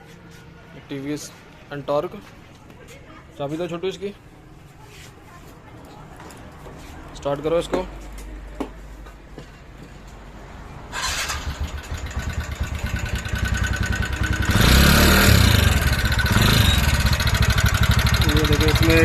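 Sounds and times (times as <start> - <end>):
scooter engine starting and running: 10.9 - 19.0.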